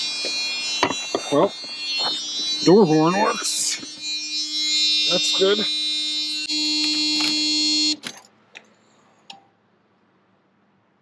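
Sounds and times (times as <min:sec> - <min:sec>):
door warning buzzer: 0:00.0 - 0:08.0.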